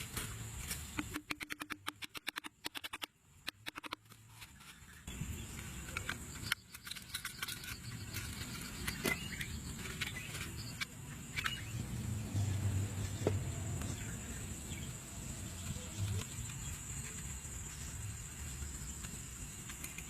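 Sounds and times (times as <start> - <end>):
sharp clicks: 1.0 - 4.1.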